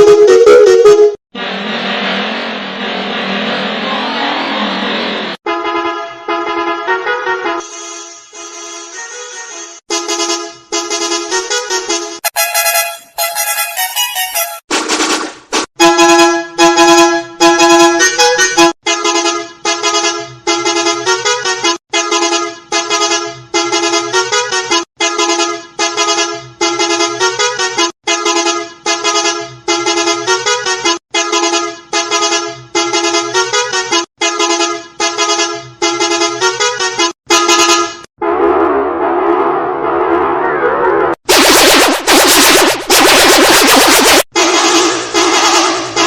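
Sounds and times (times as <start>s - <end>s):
musical bus horns beeping: 5.4s - 14.6s, 15.8s - 38.1s.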